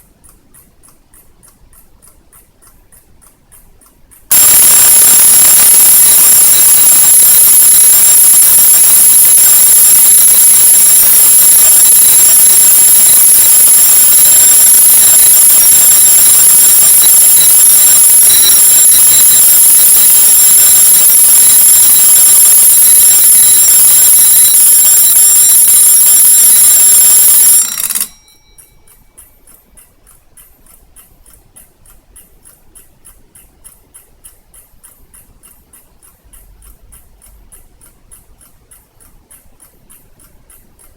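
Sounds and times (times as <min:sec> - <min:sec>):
clock ticking: 0:00.0 - 0:40.9
alarm clock bell ringing: 0:04.3 - 0:29.6.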